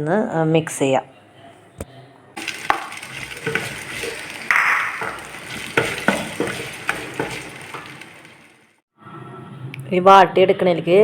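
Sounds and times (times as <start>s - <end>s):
spatula scraping a pan: 2.4s - 8.6s
onions sizzling in hot oil: 2.4s - 8.8s.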